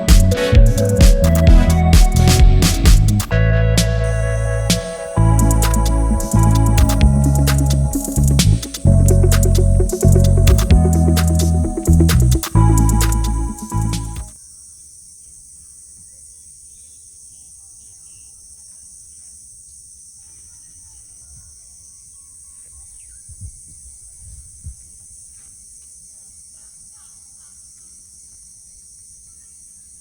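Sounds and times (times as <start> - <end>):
low rumble: 0.0 - 14.3.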